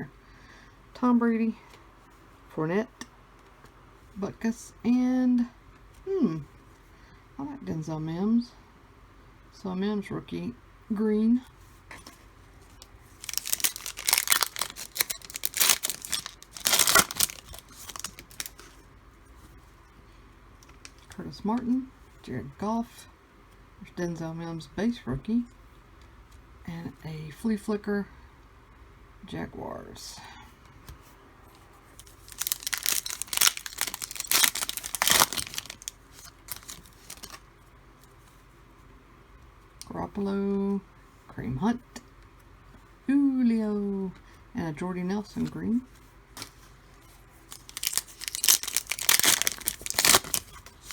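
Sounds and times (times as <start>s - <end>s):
wrapper tearing and crinkling: 13.2s - 18.8s, 32.0s - 37.4s, 47.5s - 50.9s.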